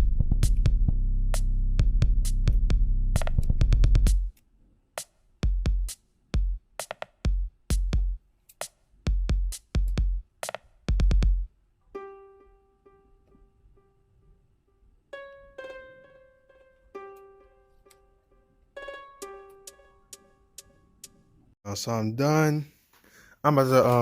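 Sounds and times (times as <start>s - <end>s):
heavy bass line: 0.0s - 4.3s
hip-hop drum machine beat: 0.0s - 4.3s, 5.0s - 11.5s, 18.9s - 21.2s
plucked melody: 11.9s - 21.4s.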